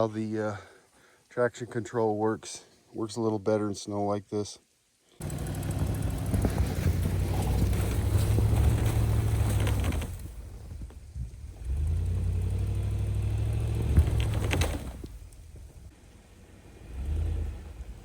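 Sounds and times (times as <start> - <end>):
engine pulling under load: 5.2 - 18.0.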